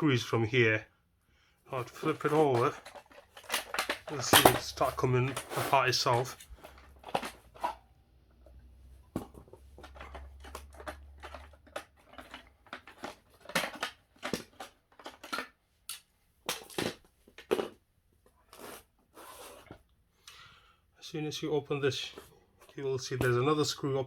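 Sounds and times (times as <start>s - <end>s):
plastic parts clicking and scraping: 1.7s - 20.4s.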